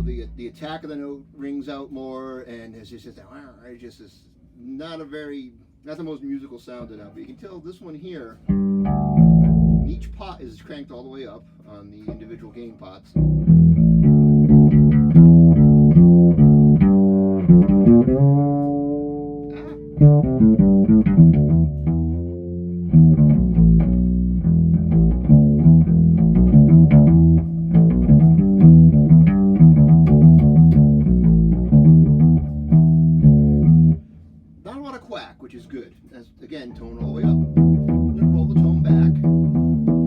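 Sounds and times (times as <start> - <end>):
fretless bass notes: 0.0 - 0.6, 8.5 - 11.0, 12.0 - 34.2, 36.8 - 40.0.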